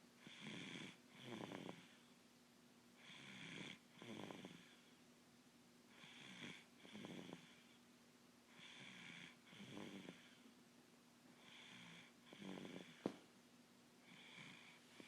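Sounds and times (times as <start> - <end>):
faint snoring: 0.2 - 2.1, 3.0 - 5.0, 5.9 - 7.8, 8.5 - 10.5, 11.4 - 13.2, 14.0 - 15.0.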